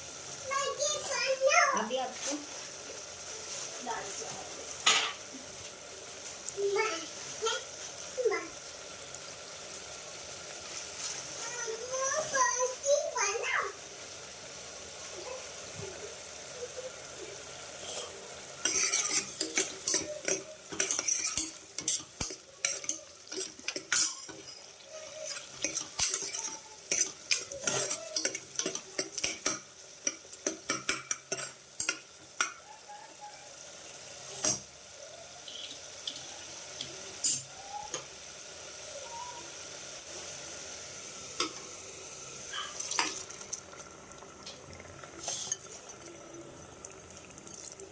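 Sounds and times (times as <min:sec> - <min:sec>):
food sizzling: 0:00.0 - 0:47.9
metal spoon clinking on pan: 0:18.6 - 0:24.7, 0:25.3 - 0:32.6, 0:37.2 - 0:38.1.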